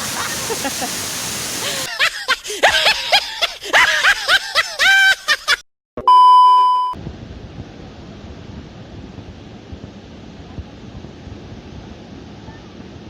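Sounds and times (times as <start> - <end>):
steady rushing noise: 0.0 - 1.9, 7.0 - 13.0
loud electronic beep: 6.0 - 7.0.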